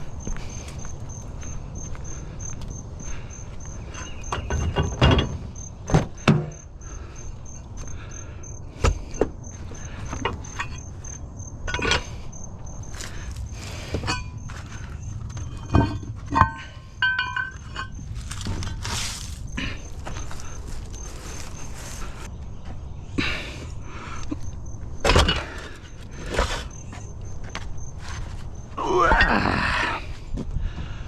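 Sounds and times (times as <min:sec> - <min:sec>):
insects chirping: 0:00.0 - 0:31.0
scrap metal knocks and clanks: 0:03.8 - 0:06.7, 0:08.7 - 0:22.3, 0:25.0 - 0:28.5
ringing metallic clinks: 0:14.0 - 0:18.3.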